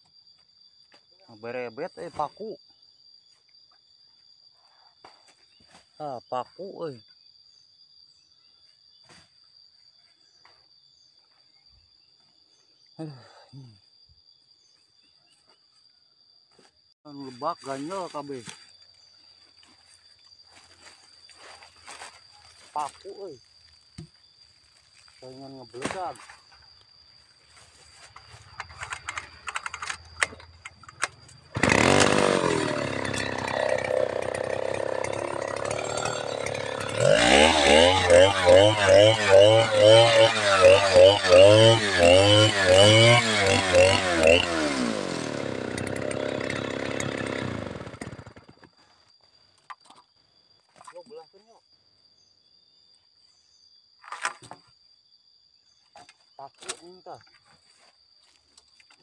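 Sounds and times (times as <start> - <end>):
insects droning: 0.0 - 59.0
chainsaw engine running: 31.4 - 48.6.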